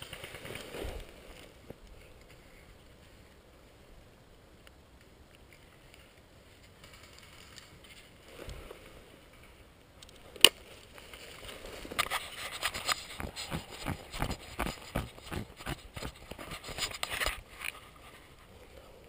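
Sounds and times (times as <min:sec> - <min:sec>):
footsteps crunching through snow: 0:11.2 - 0:17.2.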